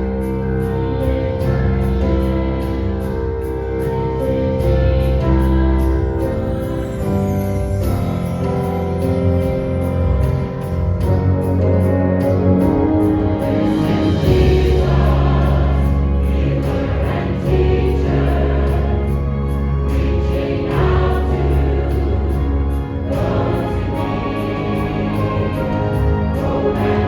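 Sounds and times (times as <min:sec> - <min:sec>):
long bass notes: 0:00.0 - 0:27.0
choir singing held chords: 0:11.0 - 0:27.0.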